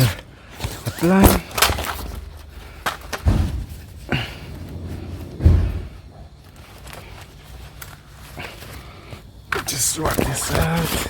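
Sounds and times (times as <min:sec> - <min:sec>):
dull knocks and thuds: 0:03.1 - 0:06.4.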